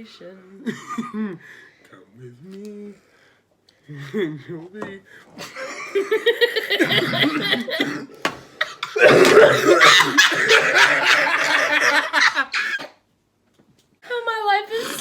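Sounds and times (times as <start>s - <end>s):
people laughing hard: 5.5s - 7.8s, 9.0s - 12.9s.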